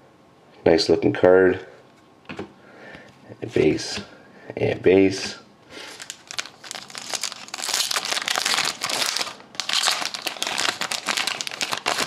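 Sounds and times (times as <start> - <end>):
foil wrapper crinkling: 5.8 - 12.0.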